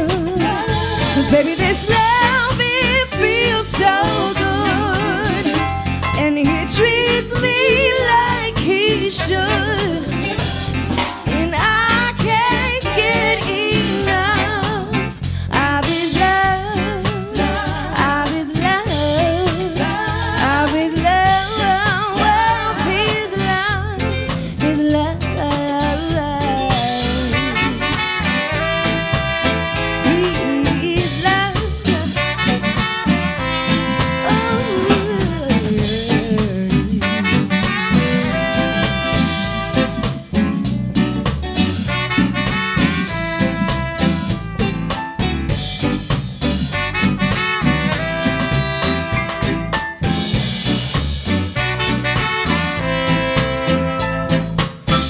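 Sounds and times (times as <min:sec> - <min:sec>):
reggae band playing: 0:00.0 - 0:55.0.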